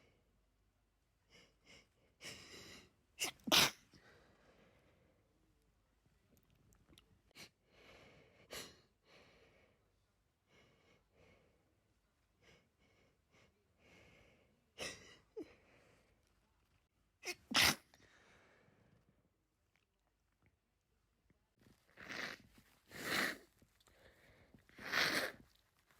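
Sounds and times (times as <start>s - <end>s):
person sneezing: 3.2s - 3.9s, 17.2s - 18.0s.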